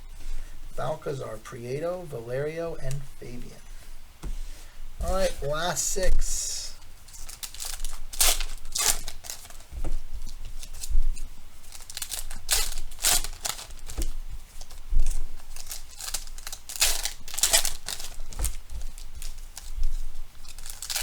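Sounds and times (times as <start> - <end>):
foil wrappers tearing and crinkling: 5.0 - 21.0.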